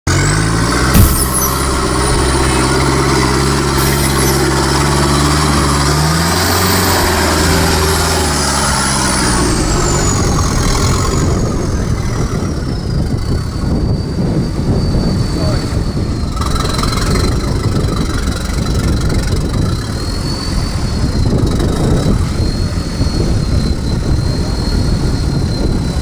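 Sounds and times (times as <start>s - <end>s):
thin high whistle: 0.9s - 5.8s.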